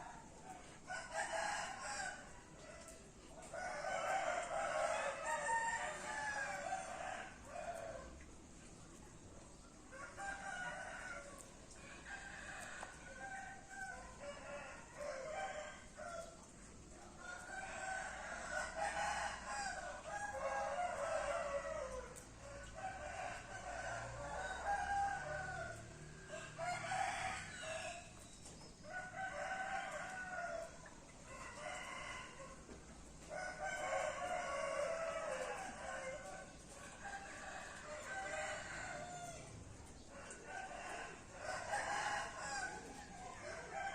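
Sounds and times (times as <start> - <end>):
roosters crowing: 0.0 - 8.2, 17.2 - 43.9.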